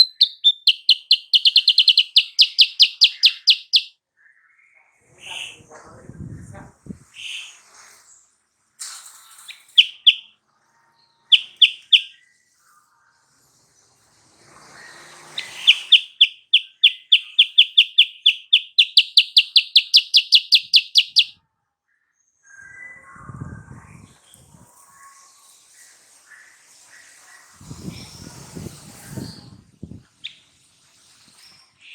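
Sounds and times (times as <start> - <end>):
bird calling: 0.0 - 3.9, 9.6 - 10.3, 11.3 - 12.2, 15.4 - 21.3.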